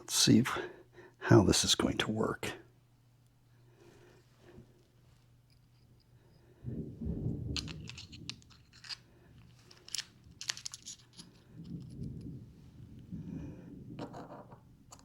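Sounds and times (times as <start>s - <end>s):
small metal parts clicking: 7.6s - 12.3s.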